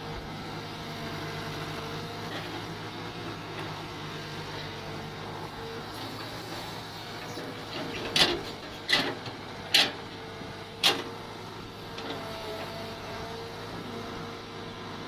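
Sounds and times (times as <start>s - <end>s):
mini excavator humming: 0.0s - 15.0s.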